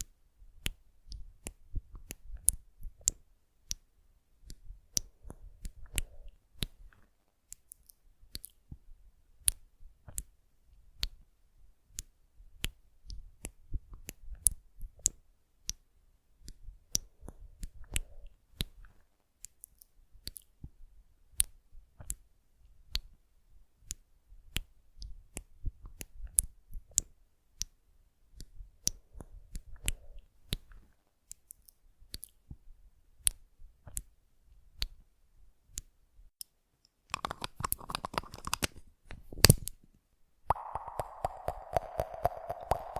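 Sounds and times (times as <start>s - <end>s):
crisp clicking and tapping: 36.9s - 38.8s.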